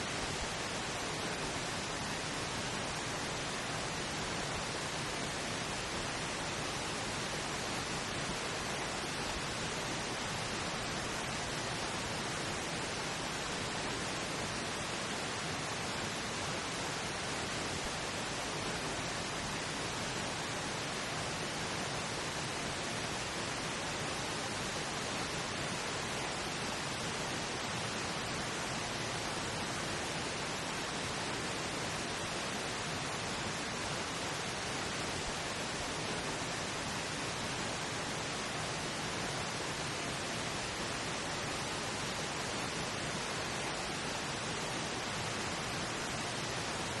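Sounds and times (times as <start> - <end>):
steady pink noise: 0.0 - 47.0.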